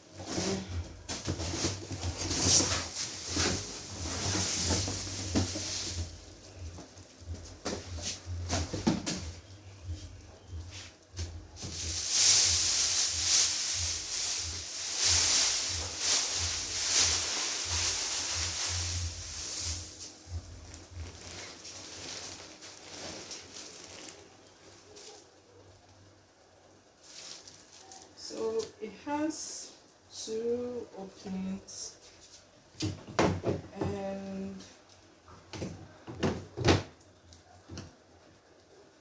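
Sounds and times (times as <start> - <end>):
packaging rustling and crinkling: 0.1 - 25.4, 27.0 - 28.2.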